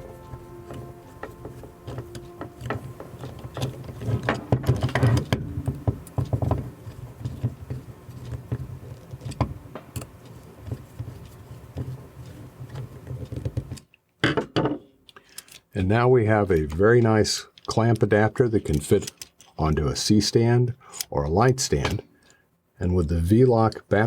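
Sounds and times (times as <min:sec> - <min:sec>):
steady low hum: 0:00.0 - 0:11.0
metal parts clicking and rattling: 0:17.6 - 0:19.6.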